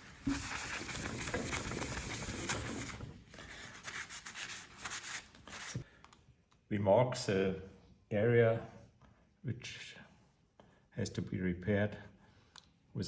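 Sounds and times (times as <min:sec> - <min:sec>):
cloth rubbing on plastic: 0:00.0 - 0:05.8.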